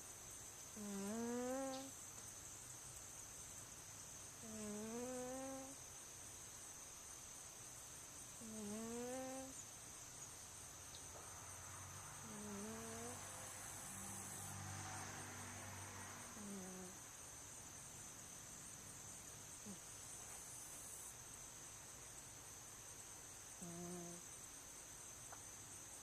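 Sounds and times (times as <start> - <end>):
cat snoring softly: 0.8 - 1.9, 4.4 - 5.8, 8.4 - 9.6, 12.2 - 13.2, 16.4 - 17.0, 23.6 - 24.2.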